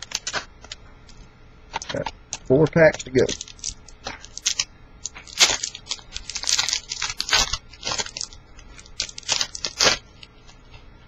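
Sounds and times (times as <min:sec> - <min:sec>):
foil wrapper tearing and crinkling: 0:00.0 - 0:00.8, 0:02.7 - 0:10.7.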